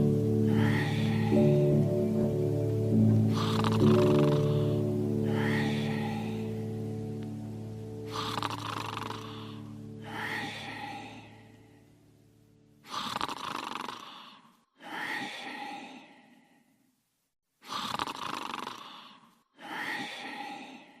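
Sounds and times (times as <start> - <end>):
held musical chord: 0.0 - 8.1
cartoon character snoring: 3.3 - 6.6, 8.1 - 11.2, 12.8 - 14.5, 17.6 - 19.2.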